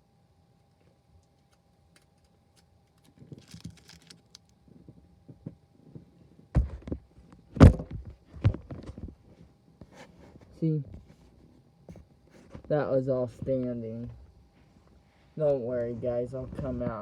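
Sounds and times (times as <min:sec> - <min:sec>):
rustling and handling: 0:00.6 - 0:17.0
heavy thuds and clunks: 0:06.5 - 0:09.2.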